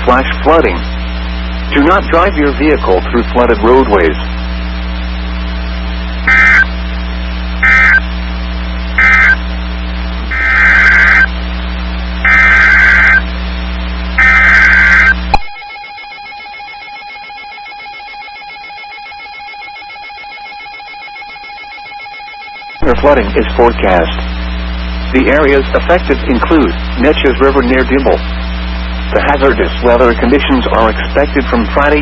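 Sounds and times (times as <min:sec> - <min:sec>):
shrill digital data bursts: 0:06.2 - 0:06.7, 0:07.6 - 0:08.0, 0:09.0 - 0:09.4, 0:10.3 - 0:11.3, 0:12.2 - 0:13.2, 0:14.2 - 0:21.7
steady alert tone: 0:06.3 - 0:06.7, 0:07.6 - 0:08.0, 0:09.0 - 0:09.4, 0:10.3 - 0:11.3, 0:12.3 - 0:13.2, 0:14.2 - 0:23.2.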